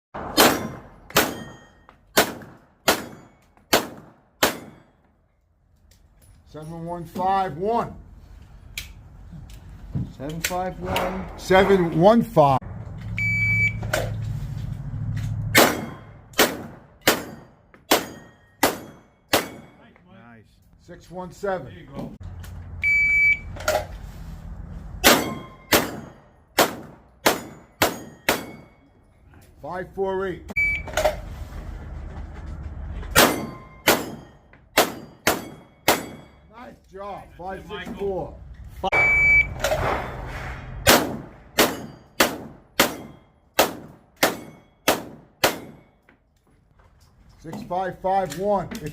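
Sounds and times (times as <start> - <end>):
pistol shots: 0.2 - 1.5, 2.1 - 4.8, 15.6 - 19.7, 25.0 - 28.5, 40.9 - 45.8
steel plates ringing: 0.5 - 2.1, 17.1 - 20.0, 27.3 - 29.2, 33.2 - 36.6, 41.6 - 42.2, 44.3 - 44.9
shot timer beep: 13.2 - 13.8, 22.8 - 23.5, 30.6 - 31.0, 38.9 - 39.6.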